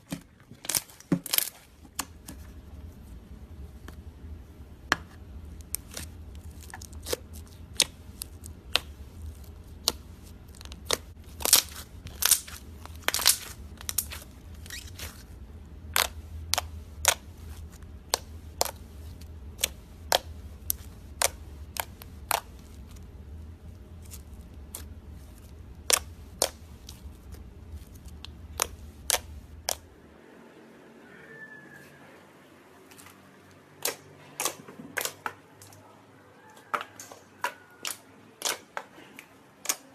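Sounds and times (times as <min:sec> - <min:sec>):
steady low hum: 0:00.0 - 0:31.1
sharp irregular clicks and cracks: 0:28.0 - 0:29.8.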